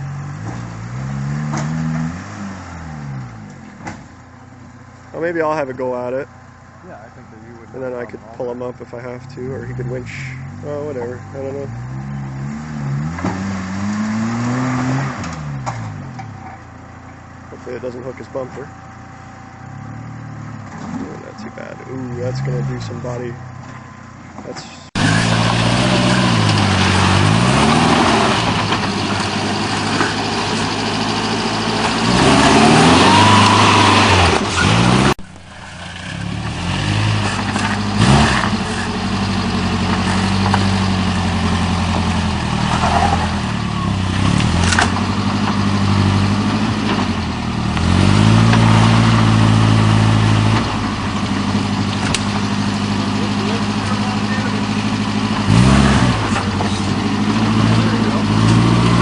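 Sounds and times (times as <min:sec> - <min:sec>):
engine revving: 0:00.0 - 0:04.1, 0:06.9 - 0:16.5, 0:17.5 - 0:23.8, 0:24.4 - 0:59.0.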